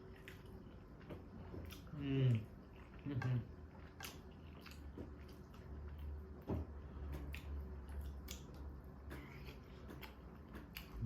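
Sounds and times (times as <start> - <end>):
low steady hum: 0.0 - 11.0
wet chewing sounds: 0.0 - 11.0
small clicks and smacks: 3.2 - 11.0.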